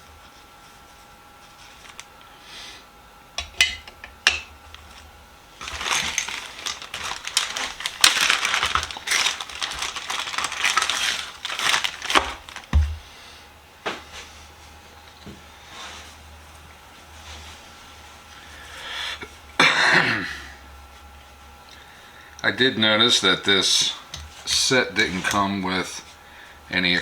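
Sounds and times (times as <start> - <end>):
metal tools clinking and rattling: 5.6 - 11.9.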